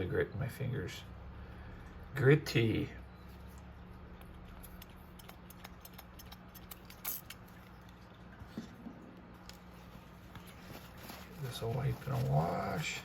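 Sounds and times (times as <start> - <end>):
small metal parts clicking: 6.2 - 7.4.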